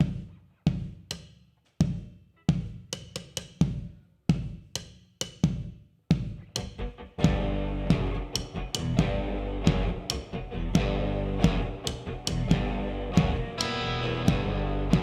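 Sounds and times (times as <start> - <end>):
bass drum thuds: 6.1 - 15.0.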